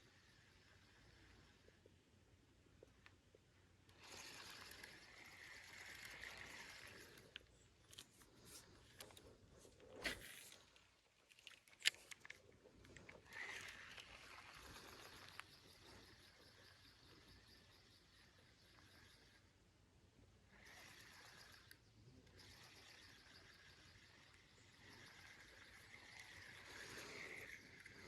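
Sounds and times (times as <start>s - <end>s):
fishing reel whirring: 0.0s - 2.0s, 3.9s - 8.0s, 12.9s - 19.8s, 20.4s - 28.0s.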